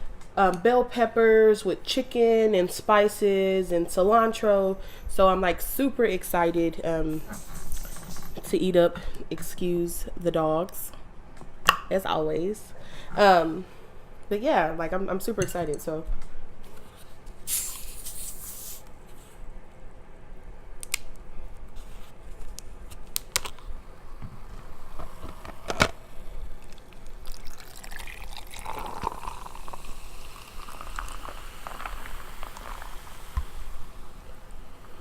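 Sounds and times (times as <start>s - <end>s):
short hiss: 17.4s - 18.9s
soda pouring into a cup: 26.6s - 35.0s.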